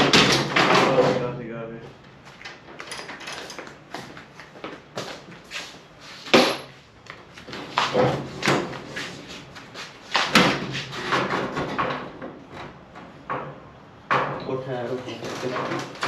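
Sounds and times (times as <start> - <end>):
knocks and clatter on garage door: 0.0 - 1.4, 2.3 - 4.8, 7.3 - 16.0.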